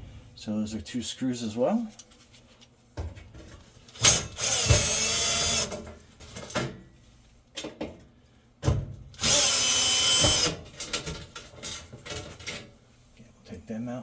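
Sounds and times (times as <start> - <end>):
power drill motor whine: 4.4 - 5.7, 9.2 - 10.6
drill bit knocks: 9.4 - 10.5.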